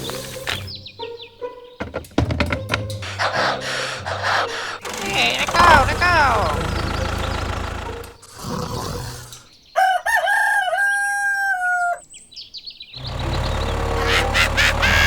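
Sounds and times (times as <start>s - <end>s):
low machine hum: 4.6s - 8.2s, 13.0s - 15.0s
rooster crowing: 9.8s - 12.1s.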